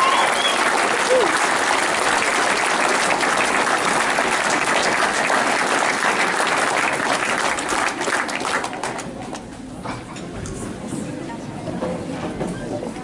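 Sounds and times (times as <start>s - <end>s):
audience applauding: 0.0s - 9.2s.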